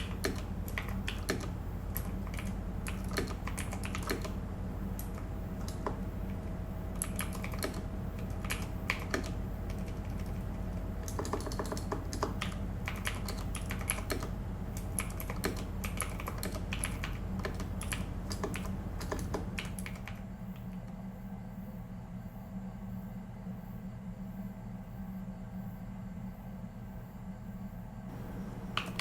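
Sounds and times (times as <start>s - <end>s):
mechanical keyboard typing: 0.0s - 20.7s, 28.6s - 29.0s
steady low hum: 0.0s - 29.0s.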